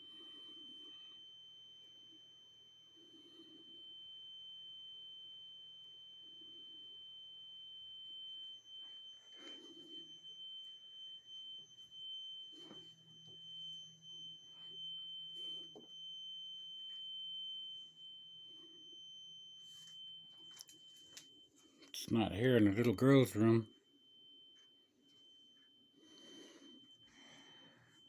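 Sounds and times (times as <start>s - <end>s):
alarm high-pitched steady tone: 0.0s - 28.0s.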